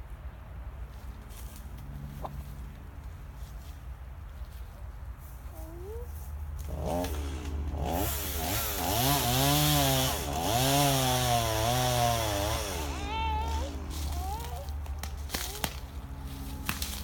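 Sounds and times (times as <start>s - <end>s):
chainsaw cutting wood: 6.6s - 17.0s.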